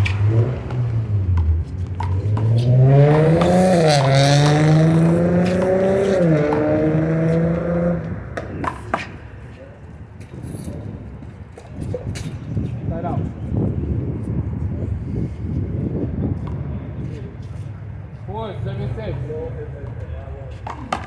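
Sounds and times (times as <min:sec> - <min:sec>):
vehicle engine accelerating: 0:00.0 - 0:08.8.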